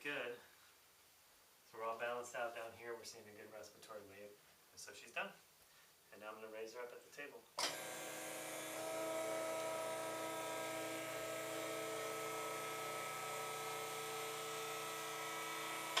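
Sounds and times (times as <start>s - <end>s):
electric motor humming: 7.7s - 16.0s.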